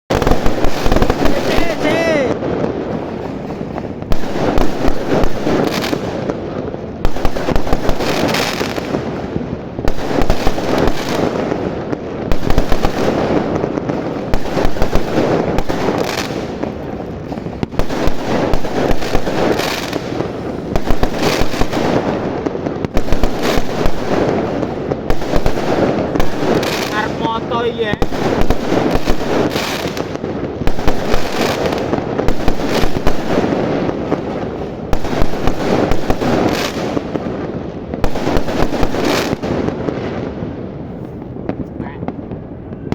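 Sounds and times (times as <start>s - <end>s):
fireworks crackling: 0.1s - 42.9s
loud fireworks bangs: 0.1s - 42.9s.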